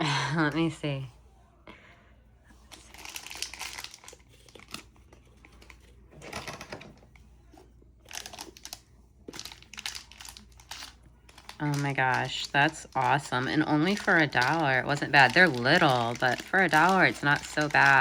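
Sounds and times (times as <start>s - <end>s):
packaging crinkling and tearing: 2.7s - 6.9s, 8.1s - 18.0s.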